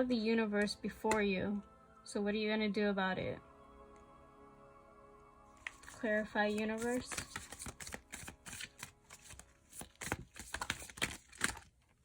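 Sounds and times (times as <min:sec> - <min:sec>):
cards being shuffled: 0:05.6 - 0:11.8.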